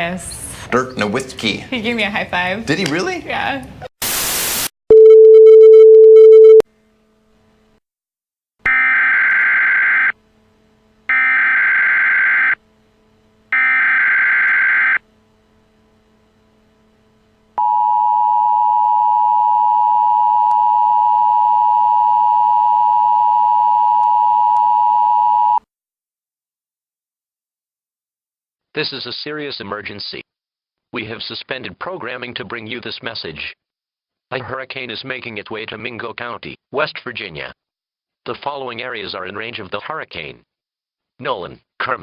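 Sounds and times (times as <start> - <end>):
loud steady tone: 4.9 - 6.6, 17.6 - 25.6
two-tone attention signal: 4.9 - 6.6.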